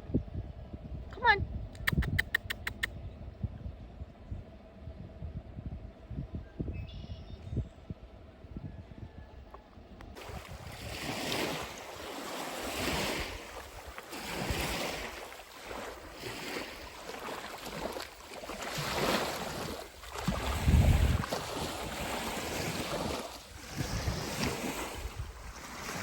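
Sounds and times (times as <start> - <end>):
wind blowing in gusts: 0.0 - 26.0
wind buffeting microphone: 0.0 - 26.0.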